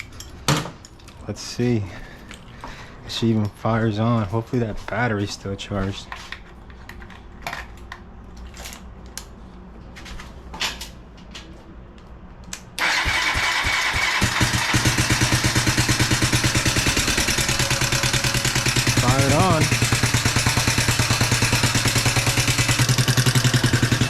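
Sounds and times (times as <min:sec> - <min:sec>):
motorcycle engine starting and running: 0:12.8 - 0:24.0.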